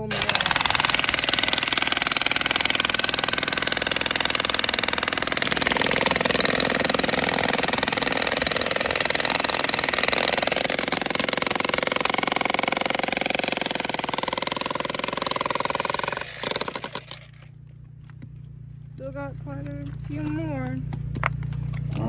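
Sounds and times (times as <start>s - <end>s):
jackhammers hammering rock: 0.0s - 17.4s.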